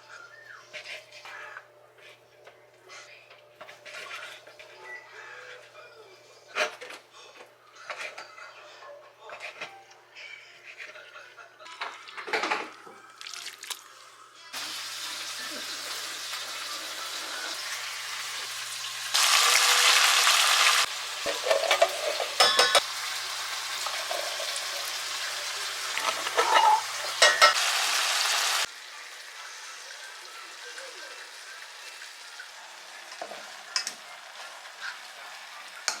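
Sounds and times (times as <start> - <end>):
food sizzling in a frying pan: 14.5 - 36.0
utensil clinking against pan: 21.3 - 22.8, 26.4 - 27.6.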